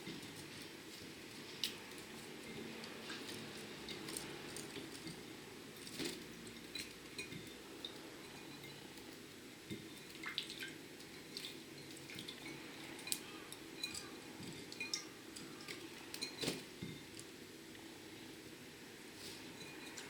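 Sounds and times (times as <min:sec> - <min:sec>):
water drips and splashes: 0:09.7 - 0:13.2.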